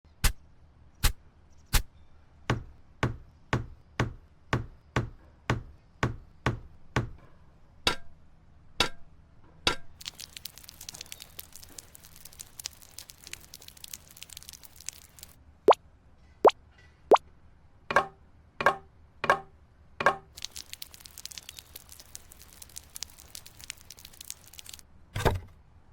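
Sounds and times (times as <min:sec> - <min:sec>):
dense crackling patter: 0:10.0 - 0:15.4, 0:20.3 - 0:24.8
small tool knocking on hard material: 0:17.9 - 0:20.3.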